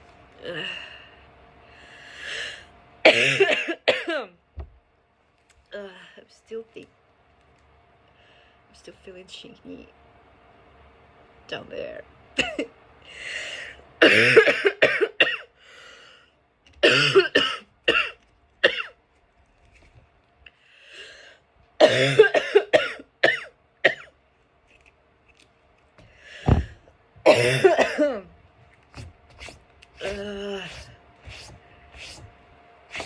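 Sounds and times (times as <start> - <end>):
person coughing: 3.0 - 4.3, 12.4 - 12.7, 14.0 - 15.5, 16.8 - 19.0, 21.8 - 24.1, 27.2 - 28.3.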